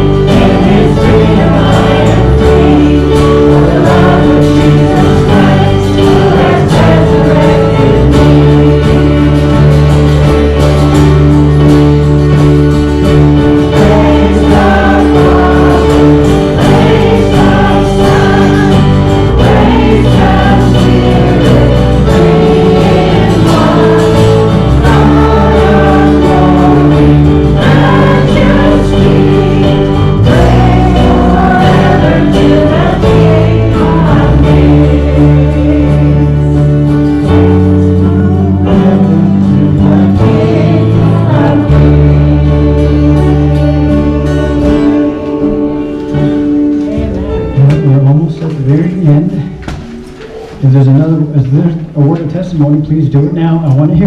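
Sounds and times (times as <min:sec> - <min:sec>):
congregation singing a hymn: 0:00.0 - 0:51.9.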